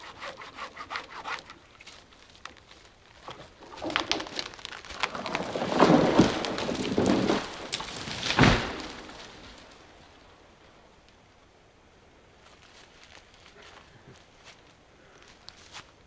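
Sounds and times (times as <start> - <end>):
tree trunk crackling and snapping: 1.1 - 11.3
branches crashing: 1.7 - 10.8
tree hitting ground thud: 3.3 - 9.9.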